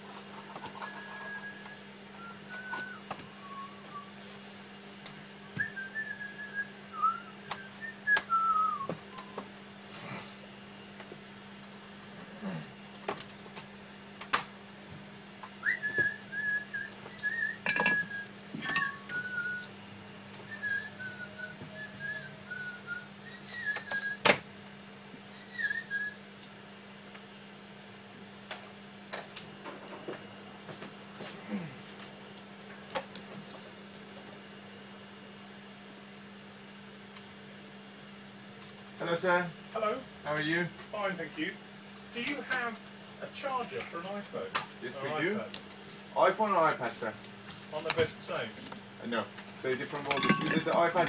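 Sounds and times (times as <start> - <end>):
steady low hum: 0.0 - 51.0
person whistling a tune: 0.8 - 4.1, 5.6 - 9.4, 15.6 - 19.7, 20.5 - 24.2, 25.3 - 26.2.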